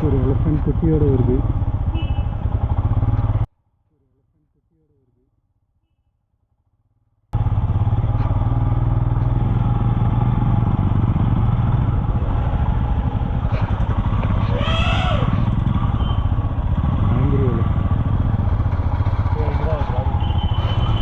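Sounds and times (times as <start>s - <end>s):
motorcycle engine rumbling: 0.0s - 4.4s, 6.7s - 21.0s.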